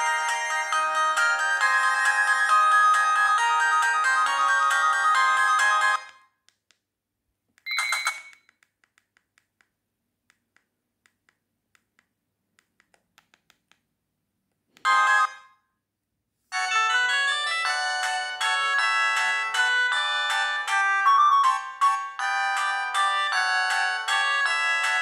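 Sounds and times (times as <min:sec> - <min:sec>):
polyphonic phone ringtones: 0:07.7 - 0:08.4, 0:14.8 - 0:15.6, 0:16.5 - 0:25.0.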